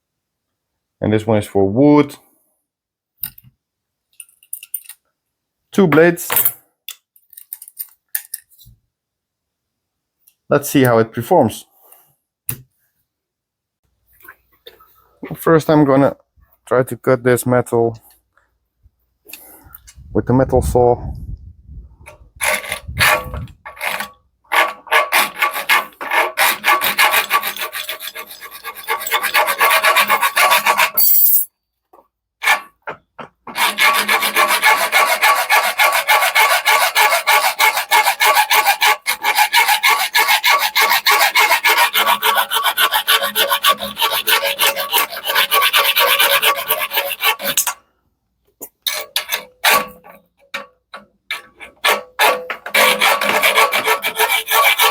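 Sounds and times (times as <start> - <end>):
saw rasping through metal: 22.4 - 31.1, 32.4 - 32.8, 33.5 - 47.8, 48.9 - 50.2, 51.3 - 54.9.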